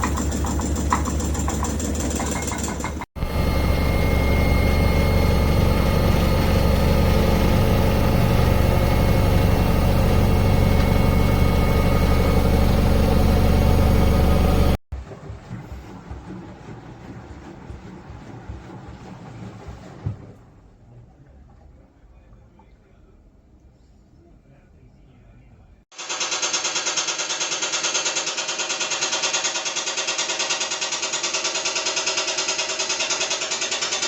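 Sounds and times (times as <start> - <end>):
washing machine hum: 0.0 - 23.4.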